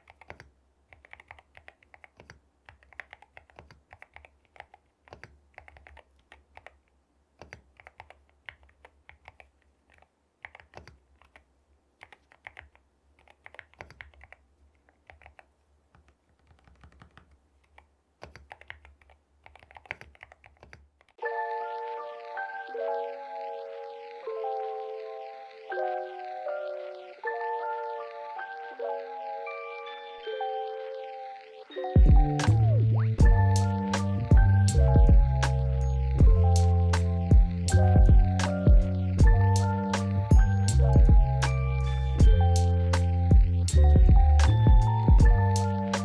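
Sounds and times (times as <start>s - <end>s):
mechanical keyboard typing: 0.0s - 21.2s, 33.2s - 46.0s
chiming background music: 21.2s - 46.0s.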